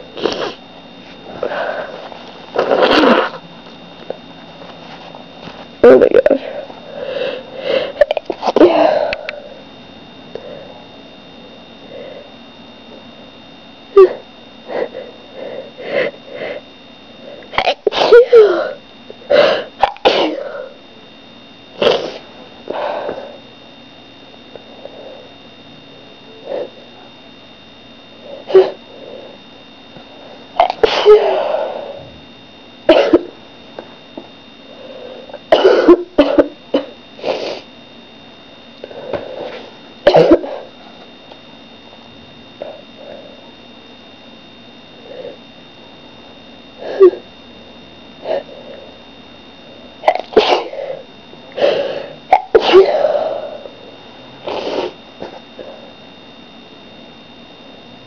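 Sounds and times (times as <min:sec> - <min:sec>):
person sneezing: 0:00.2 - 0:00.6, 0:02.6 - 0:03.4, 0:17.6 - 0:20.8, 0:21.8 - 0:22.3, 0:30.6 - 0:32.0, 0:32.9 - 0:33.4, 0:35.5 - 0:37.7, 0:39.5 - 0:40.7, 0:50.1 - 0:51.0, 0:51.6 - 0:53.6
breathy sounds: 0:01.3 - 0:03.4, 0:06.4 - 0:09.7, 0:10.3 - 0:10.9, 0:11.8 - 0:12.4, 0:14.0 - 0:17.6, 0:28.2 - 0:29.5, 0:50.8 - 0:52.2
person breathing in: 0:01.4 - 0:02.1, 0:06.4 - 0:08.0, 0:14.7 - 0:16.6, 0:51.6 - 0:52.2.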